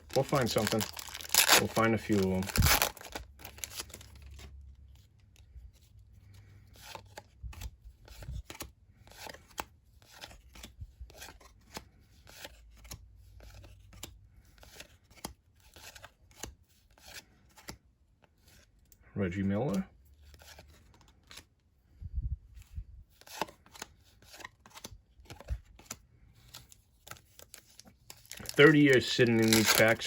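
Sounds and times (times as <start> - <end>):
trading cards sliding and flicking: 23.2 - 30.0.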